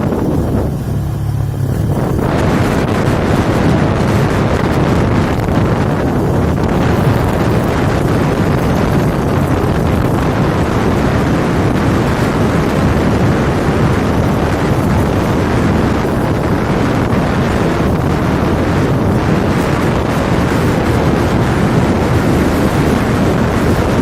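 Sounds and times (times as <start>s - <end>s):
strong wind buffeting microphone: 0.0s - 24.0s.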